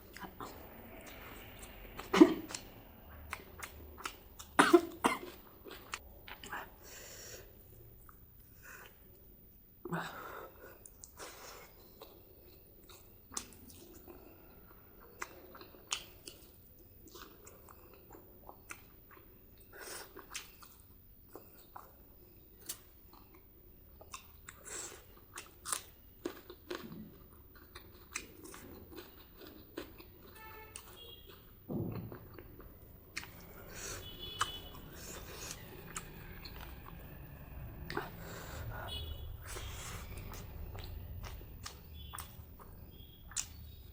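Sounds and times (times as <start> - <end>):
person chewing food: 0.0 - 6.7, 10.6 - 43.9
food crunching: 11.8 - 38.6, 39.4 - 43.9.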